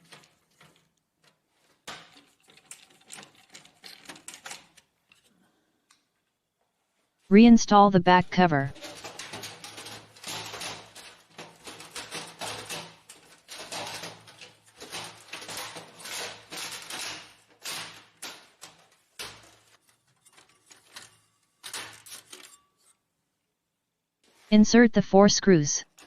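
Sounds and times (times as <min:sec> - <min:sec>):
plastic clicks knocks and scraping: 0:00.0 - 0:05.3.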